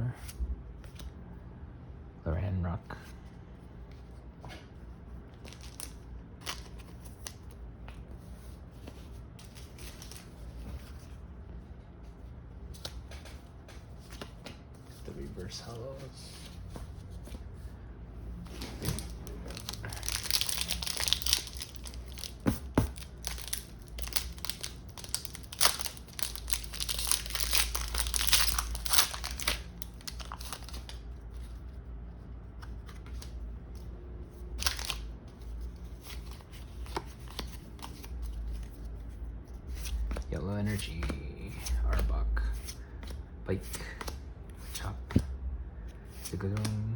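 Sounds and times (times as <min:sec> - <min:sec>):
foil wrapper crinkling: 0:19.0 - 0:31.0, 0:34.6 - 0:35.0.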